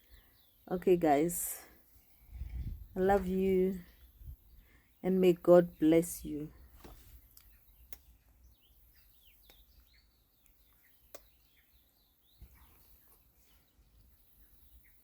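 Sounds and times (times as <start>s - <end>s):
faint birds chirping: 0.0s - 15.0s.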